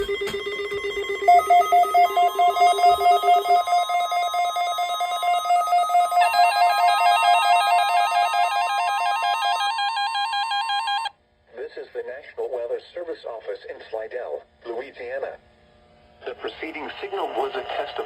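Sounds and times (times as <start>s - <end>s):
rapid electronic beeping: 0.0s - 6.7s
steady high tone: 0.0s - 11.1s.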